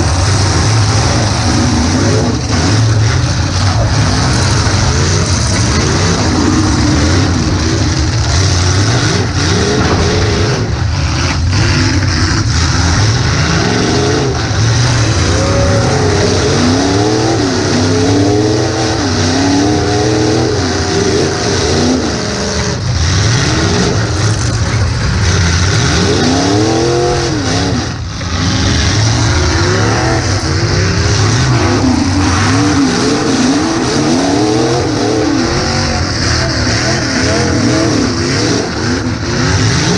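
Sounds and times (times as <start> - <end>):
car engine revving: 0.0 - 39.9.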